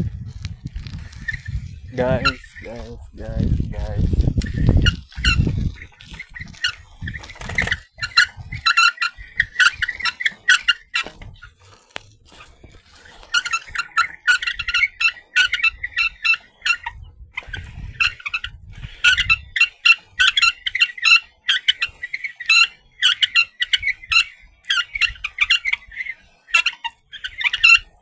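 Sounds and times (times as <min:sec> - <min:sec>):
swamp creatures chirping: 0:01.3 - 0:11.1.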